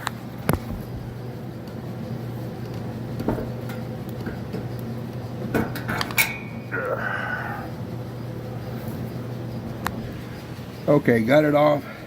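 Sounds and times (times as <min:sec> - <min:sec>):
sharp metallic clank: 0:05.6 - 0:06.6.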